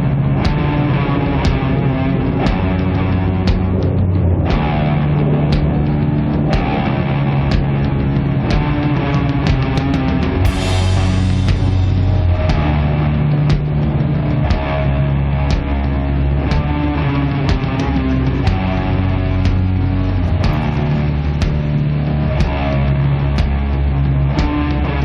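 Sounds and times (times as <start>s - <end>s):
low guitar and bass notes: 0.0s - 25.0s
cymbal crash: 10.4s - 12.5s
sharp drum hits: 10.4s - 12.7s.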